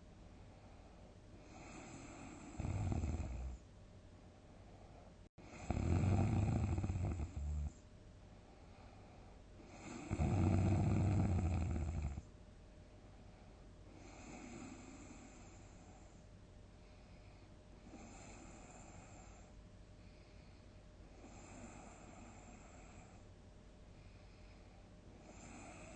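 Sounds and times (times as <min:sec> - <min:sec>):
quiet breathing: 0:00.0 - 0:25.9
person snoring: 0:01.4 - 0:03.6, 0:05.5 - 0:07.8, 0:09.7 - 0:12.2.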